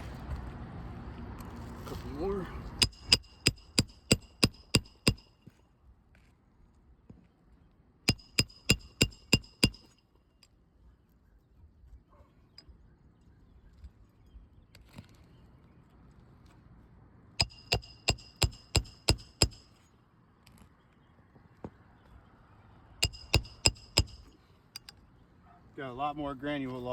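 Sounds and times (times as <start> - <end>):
hammer blows ringing on metal: 2.8 - 5.4, 8.1 - 9.9, 17.4 - 19.8, 23.0 - 24.3.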